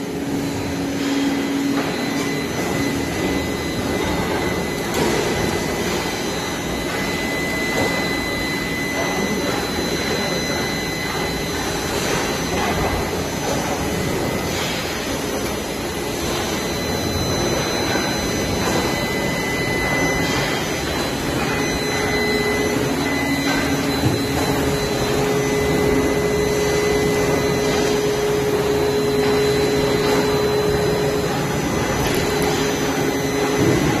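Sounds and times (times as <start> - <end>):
welding machine hissing and whirring: 0.0 - 34.0.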